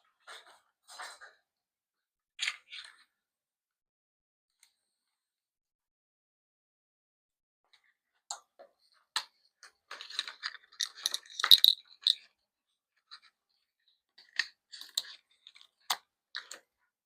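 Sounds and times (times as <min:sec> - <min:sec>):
plastic mount clicks and rattles: 0:10.0 - 0:12.2.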